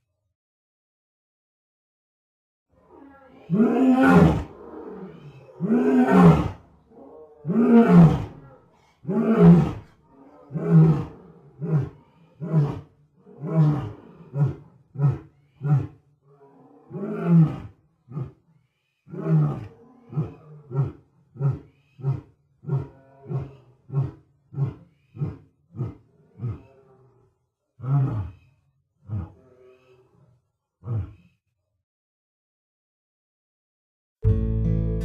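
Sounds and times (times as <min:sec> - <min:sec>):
lion roaring: 0:02.8 - 0:18.4, 0:19.1 - 0:31.4.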